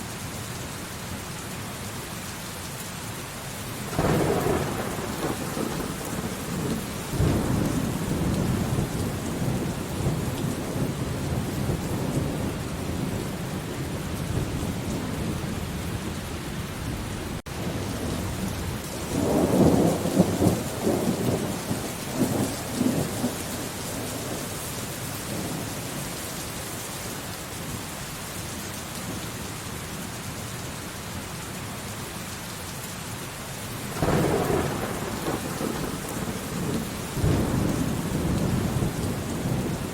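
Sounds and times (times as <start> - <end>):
steady rain: 0.0 - 39.9
rolling thunder: 3.9 - 24.5, 33.9 - 39.9.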